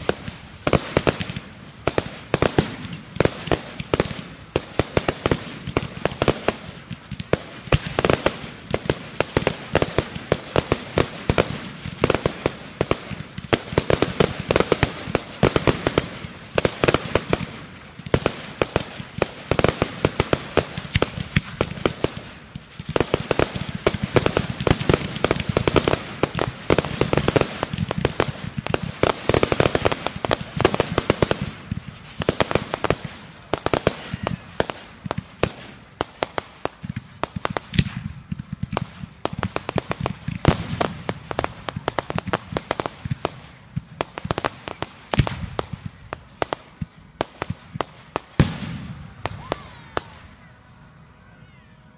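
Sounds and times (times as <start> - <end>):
fireworks bangs and crackling: 0.0 - 50.5.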